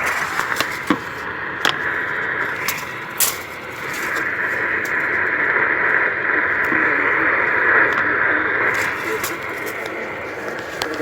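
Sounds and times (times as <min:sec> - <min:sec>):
radio static hiss: 0:00.0 - 0:11.0.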